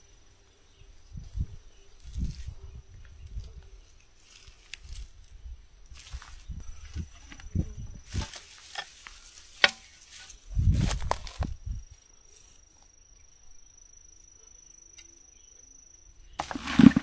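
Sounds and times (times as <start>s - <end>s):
scuffing and thudding: 16.4s - 17.0s.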